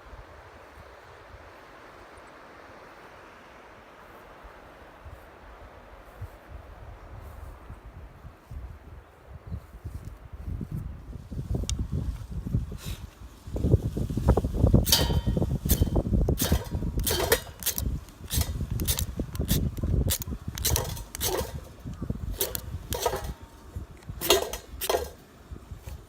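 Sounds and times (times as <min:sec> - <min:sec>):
wind rumbling on microphone: 0:03.8 - 0:26.0
metal clinks and knocks: 0:14.9 - 0:21.8, 0:22.4 - 0:23.5, 0:24.2 - 0:25.2.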